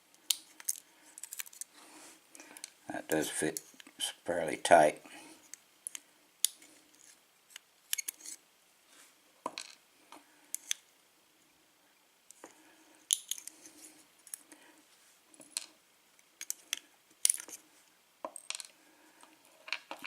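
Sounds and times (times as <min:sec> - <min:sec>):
metallic clicks of padlock pins: 0:13.1 - 0:13.6, 0:16.4 - 0:17.6.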